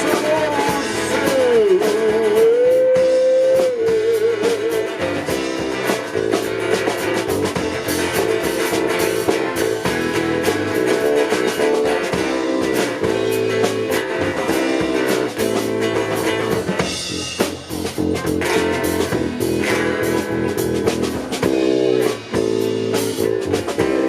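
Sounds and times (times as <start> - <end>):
person singing with vibrato: 0.0 - 5.1
live band with guitar and drums: 0.0 - 24.0.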